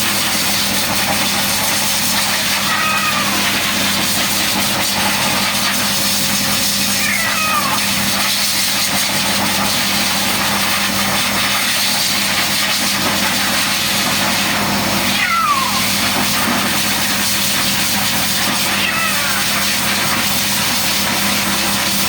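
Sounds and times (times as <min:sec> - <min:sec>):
running motor hiss and hum: 0:00.0 - 0:22.0
cat meowing: 0:02.3 - 0:03.6, 0:06.8 - 0:08.1, 0:15.1 - 0:16.0, 0:18.6 - 0:19.9.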